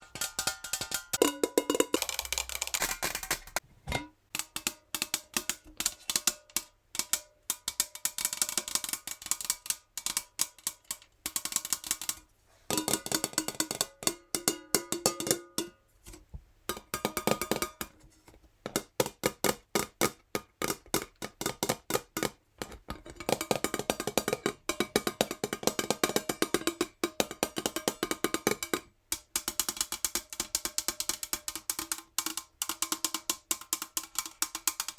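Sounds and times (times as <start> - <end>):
fingernails tapping on metal jar: 0.0 - 15.8.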